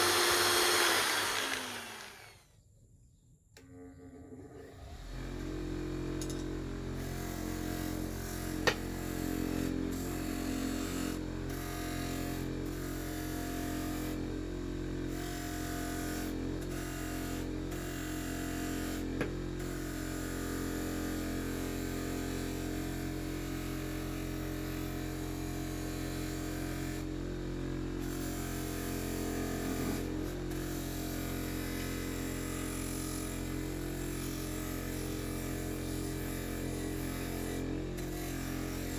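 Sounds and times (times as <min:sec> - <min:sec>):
electric power tool motor hum: 0:00.0 - 0:02.5, 0:03.6 - 0:38.9.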